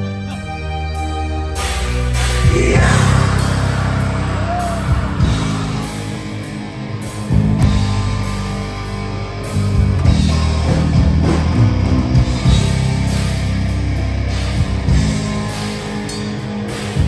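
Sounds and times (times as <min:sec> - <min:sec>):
bass guitar: 0:00.0 - 0:17.0
distorted electric guitars: 0:01.6 - 0:17.0
drum kit: 0:02.2 - 0:08.5, 0:09.7 - 0:17.0.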